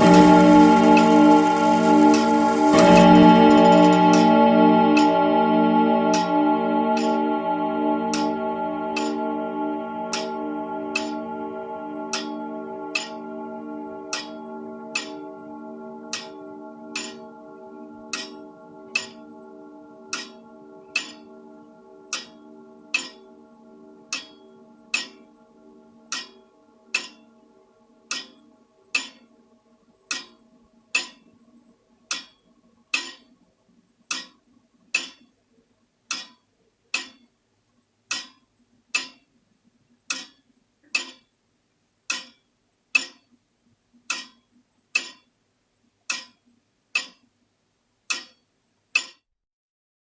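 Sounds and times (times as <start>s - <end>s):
grandfather clock ticking: 0.0s - 27.3s, 28.1s - 29.3s, 30.1s - 31.3s, 32.1s - 33.3s, 36.1s - 37.3s, 38.1s - 39.3s, 40.1s - 41.3s, 42.1s - 42.4s, 44.1s - 45.3s, 47.0s - 47.3s, 48.1s - 48.4s, 49.0s - 49.2s
clock chime ringing: 0.0s - 28.6s.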